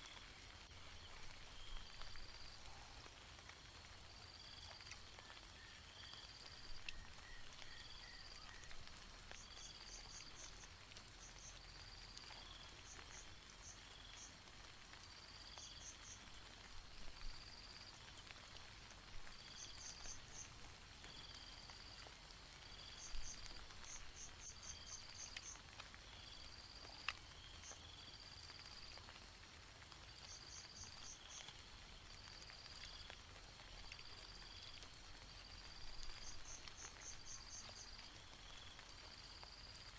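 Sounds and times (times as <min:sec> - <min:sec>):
rain patter: 0:00.0 - 0:39.9
water dripping: 0:00.1 - 0:05.6, 0:06.2 - 0:39.9
insects chirping and trilling: 0:05.9 - 0:14.5, 0:15.1 - 0:18.4, 0:19.2 - 0:29.0, 0:30.0 - 0:39.9.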